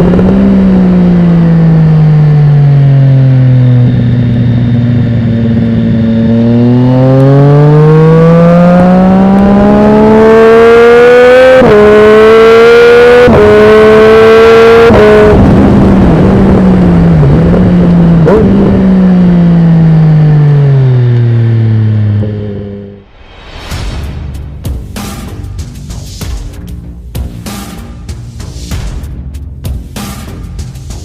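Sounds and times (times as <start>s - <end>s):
motorcycle engine accelerating: 0.0s - 23.1s.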